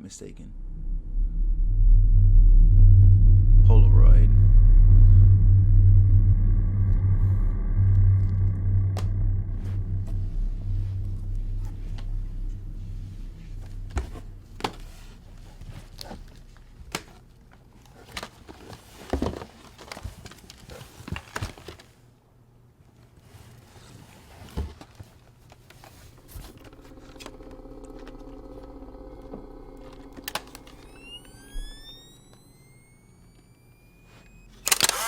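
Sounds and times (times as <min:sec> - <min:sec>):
steady low hum: 0:00.0 - 0:18.4, 0:26.0 - 0:34.8.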